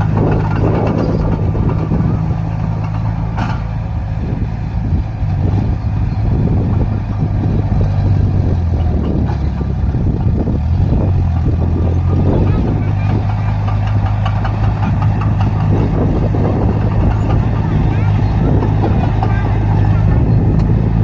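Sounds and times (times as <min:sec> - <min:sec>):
heavy vehicle engine drone: 0:00.0 - 0:21.0
irregular clattering: 0:08.5 - 0:20.7.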